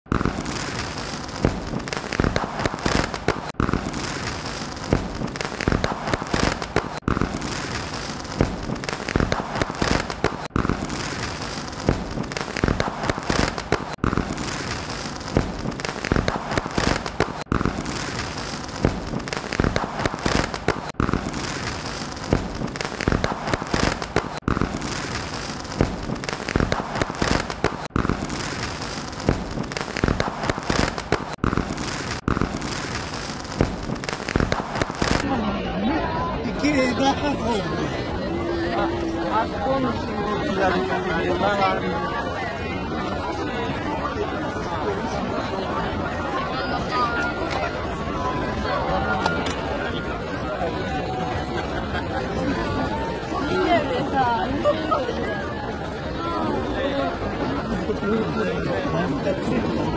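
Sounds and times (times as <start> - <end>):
fireworks bangs and crackling: 0.0 - 35.7.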